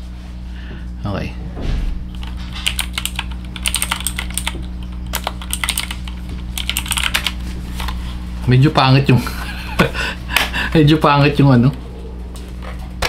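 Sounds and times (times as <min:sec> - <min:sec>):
mechanical keyboard typing: 0:02.1 - 0:07.4.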